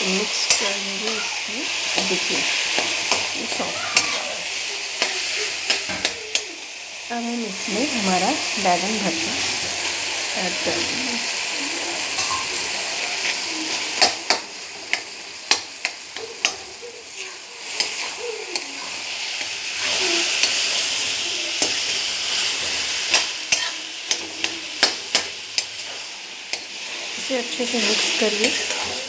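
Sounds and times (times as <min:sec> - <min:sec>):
food sizzling in hot oil: 0:00.0 - 0:29.0
spoon clicking against pan: 0:01.9 - 0:03.4, 0:05.0 - 0:06.6, 0:13.2 - 0:16.8, 0:20.3 - 0:20.8, 0:21.6 - 0:25.9.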